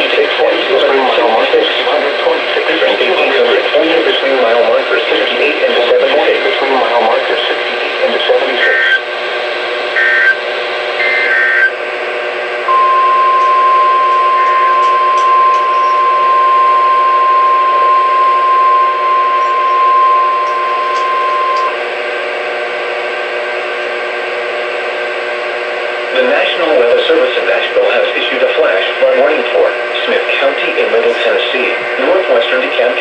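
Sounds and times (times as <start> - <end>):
radio static hiss: 0.0 - 33.0
steady warning alarm tone: 9.9 - 11.8, 12.6 - 22.5.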